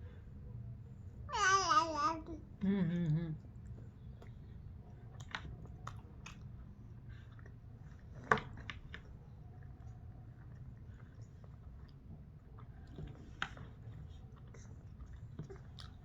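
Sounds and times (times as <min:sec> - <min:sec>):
mouth clicks and smacks chewing: 0:03.6 - 0:06.7, 0:07.3 - 0:16.0.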